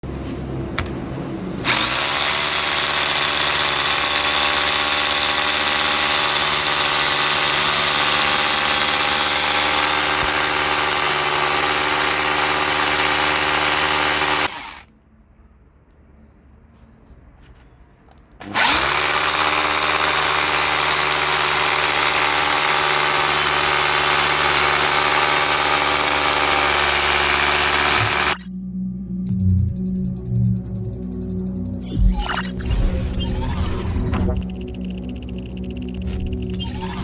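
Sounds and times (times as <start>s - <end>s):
electric hammer drill running: 1.6s - 14.9s, 18.4s - 28.5s, 34.4s - 37.0s.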